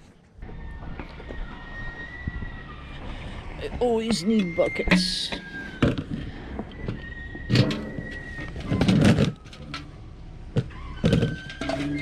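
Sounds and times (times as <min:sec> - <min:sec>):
plastic buckets knocking and rattling: 0:04.9 - 0:09.9, 0:10.5 - 0:12.0.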